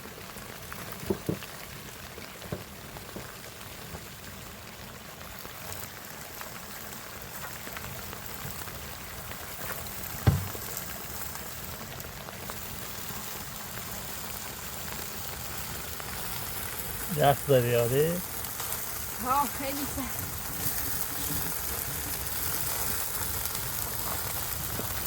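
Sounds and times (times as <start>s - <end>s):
steady rain falling: 0.0s - 25.0s
dull knock: 10.2s - 10.7s.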